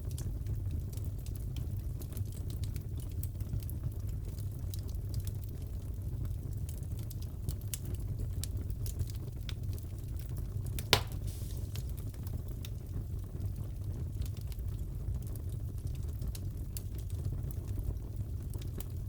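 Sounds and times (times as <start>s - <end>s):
wood fire crackling: 0.0s - 19.0s
loud sharp pop of fire: 10.8s - 12.2s.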